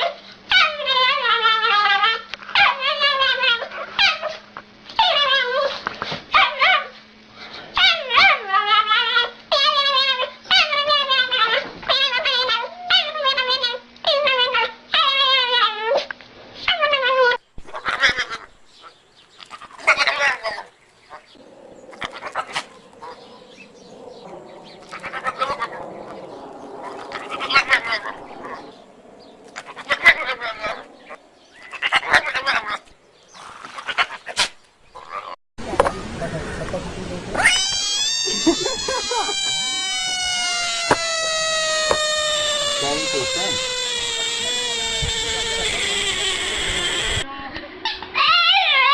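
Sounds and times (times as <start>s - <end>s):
dog whining and yowling: 0.0s - 4.4s, 5.0s - 7.0s, 7.8s - 18.4s, 37.4s - 47.2s, 48.2s - 48.9s
animal calling in quavering bursts: 17.7s - 32.9s, 37.3s - 47.3s.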